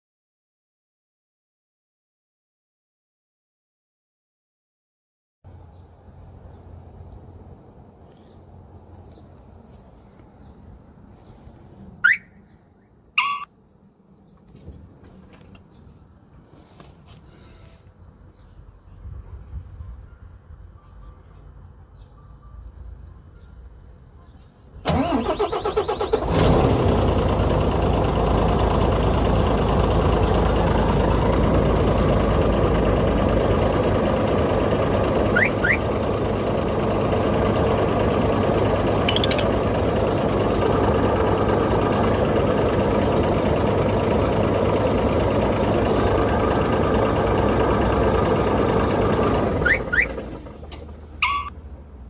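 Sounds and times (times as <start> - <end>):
short high chirps: 13.2 - 13.5, 39.1 - 39.6, 51.2 - 51.5
diesel truck engine running: 18.0 - 52.0.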